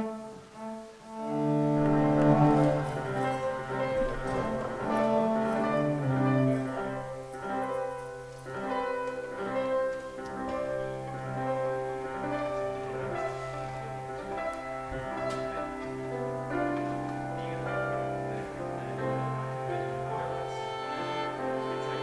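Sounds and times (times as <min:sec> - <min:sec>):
instrumental music low held notes: 0:00.0 - 0:22.0.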